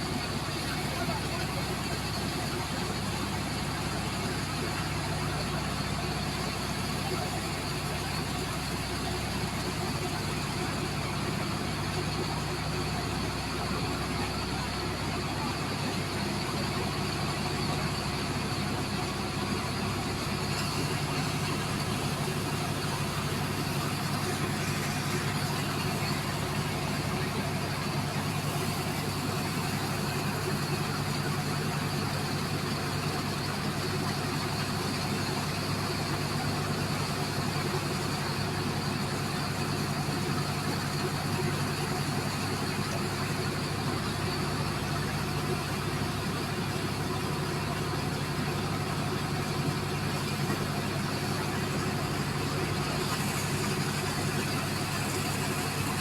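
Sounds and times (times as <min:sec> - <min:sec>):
engine running: 0:00.0 - 0:56.0
water jet spraying into sand: 0:20.2 - 0:32.9, 0:48.6 - 0:56.0.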